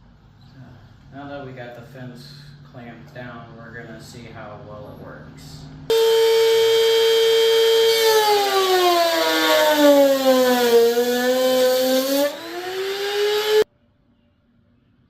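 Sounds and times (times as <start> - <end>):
router whining: 5.9 - 13.7.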